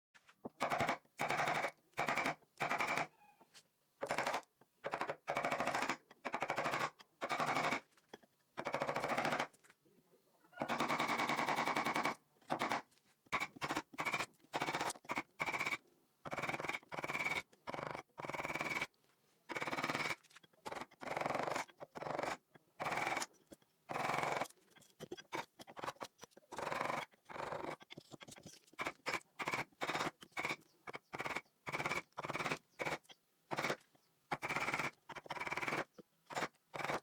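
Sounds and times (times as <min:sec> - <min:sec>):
carving tool scraping wood: 0:04.0 - 0:09.6, 0:10.7 - 0:37.0.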